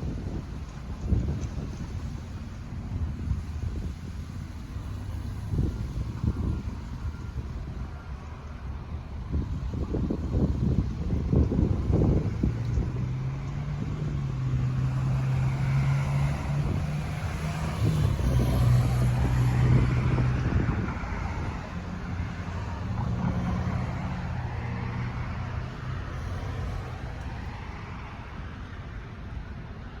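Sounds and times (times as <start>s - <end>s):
vehicle engine droning: 0.0s - 30.0s
wind rushing: 9.2s - 28.3s.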